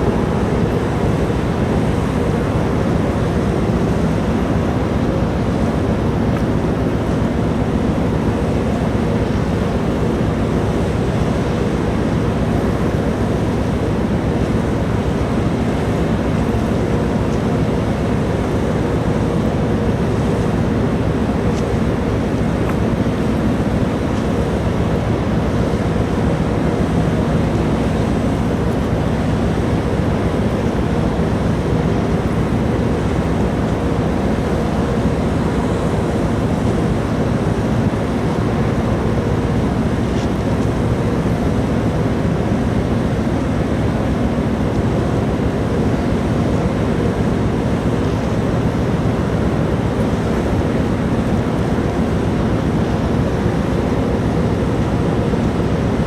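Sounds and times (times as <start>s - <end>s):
ferry engine rumble and hum: 0.0s - 56.0s.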